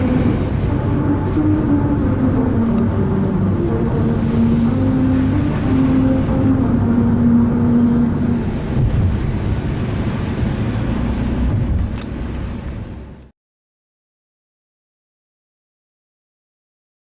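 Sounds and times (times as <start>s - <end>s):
humming notes from road grooves: 0.0s - 13.3s.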